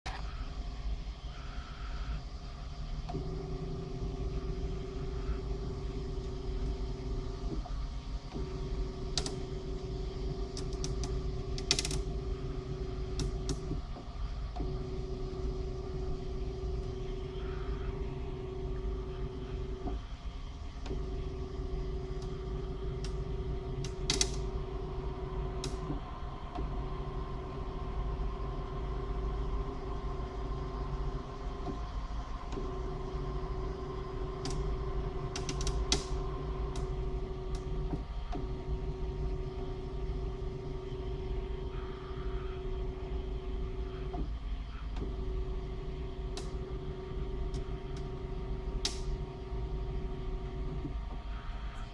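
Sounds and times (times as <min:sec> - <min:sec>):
printer motors humming: 0:00.1 - 0:51.9
sharp clicks: 0:09.1 - 0:09.5, 0:10.5 - 0:12.2, 0:13.1 - 0:13.8, 0:23.0 - 0:24.6, 0:34.4 - 0:36.9, 0:48.8 - 0:49.2.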